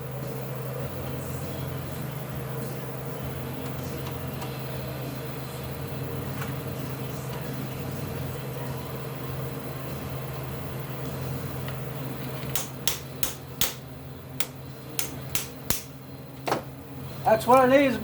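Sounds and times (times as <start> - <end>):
steady low hum: 0.0 - 18.0
small hammer tapping metal: 12.5 - 13.8, 14.4 - 15.9.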